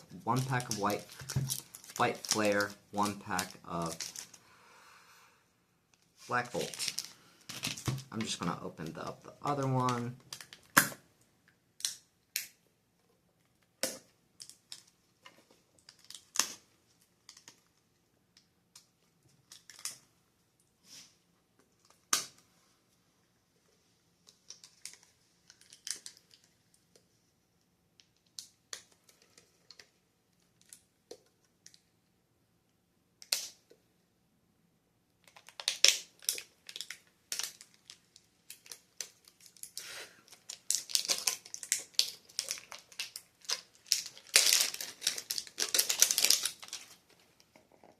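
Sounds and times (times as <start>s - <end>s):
packaging crinkling and rustling: 0.0s - 4.4s, 6.3s - 11.0s, 14.4s - 17.8s, 24.3s - 26.8s, 35.2s - 47.7s.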